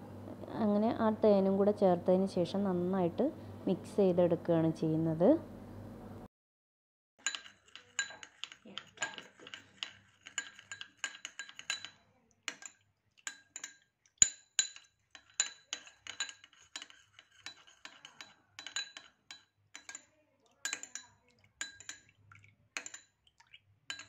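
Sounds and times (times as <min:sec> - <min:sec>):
spoon clinking against bowl: 0:07.2 - 0:22.2, 0:22.8 - 0:23.2.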